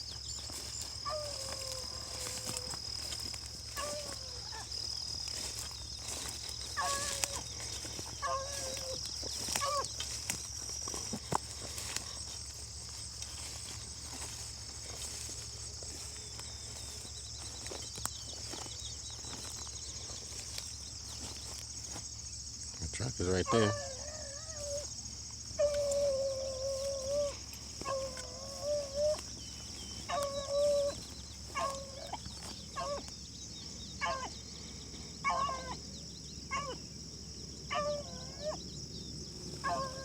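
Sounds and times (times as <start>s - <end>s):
high insect buzz: 0.0s - 40.0s
dog baying: 6.8s - 10.0s, 23.5s - 24.9s, 25.6s - 29.3s, 30.0s - 33.1s, 34.0s - 34.4s, 35.2s - 35.8s, 39.6s - 40.0s.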